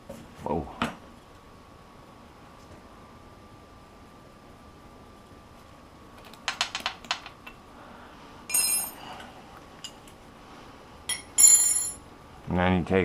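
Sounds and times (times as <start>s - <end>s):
wrench clinking: 8.5s - 9.0s, 11.1s - 12.0s.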